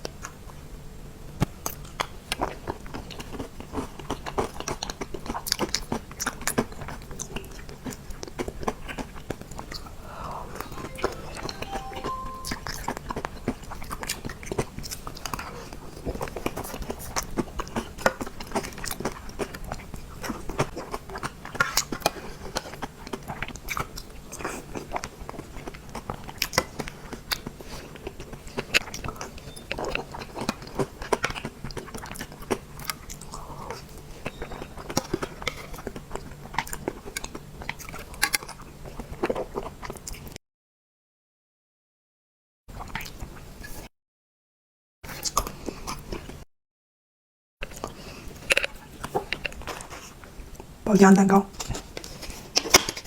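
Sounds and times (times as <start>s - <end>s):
person chewing with wet smacks: 1.4s - 10.0s, 13.9s - 40.4s, 42.8s - 43.3s.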